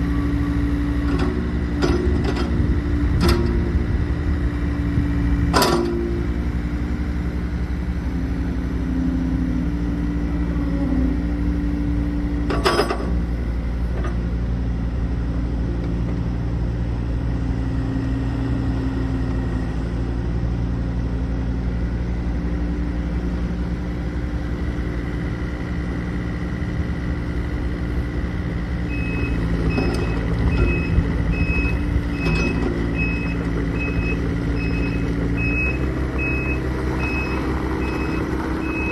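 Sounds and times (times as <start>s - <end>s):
excavator diesel engine running: 0.0s - 38.9s
travel alarm beeping: 29.0s - 38.9s.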